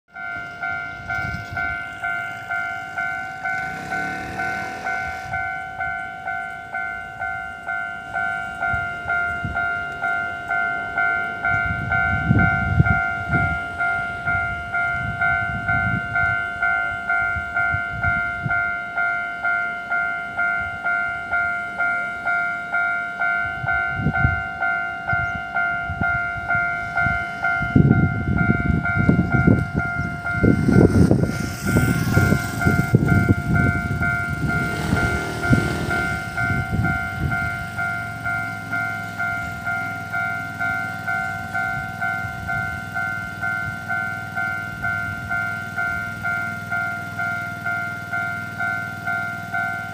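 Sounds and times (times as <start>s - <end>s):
level-crossing bell ringing: 0.1s - 49.9s
low rumbling: 1.0s - 6.6s, 25.8s - 39.7s.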